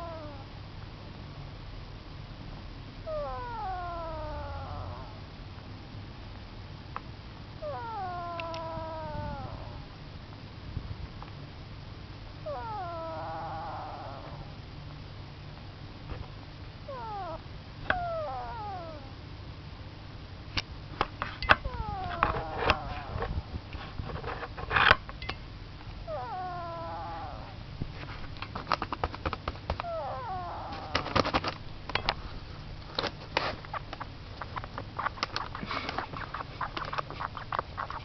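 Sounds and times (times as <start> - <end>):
duck snoring: 12.5 - 14.5, 26.1 - 27.6.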